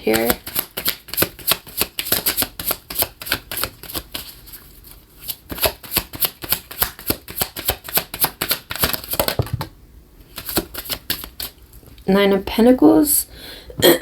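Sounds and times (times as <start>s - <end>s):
cards being shuffled: 0.1s - 9.7s, 10.3s - 11.6s.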